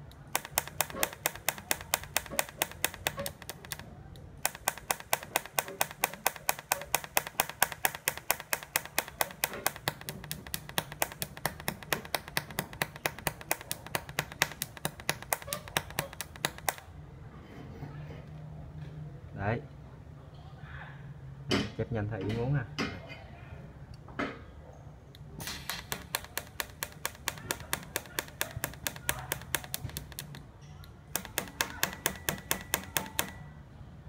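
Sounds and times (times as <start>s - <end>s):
welder pulse controller clicking: 0.0s - 16.9s, 25.4s - 30.5s, 31.1s - 33.5s.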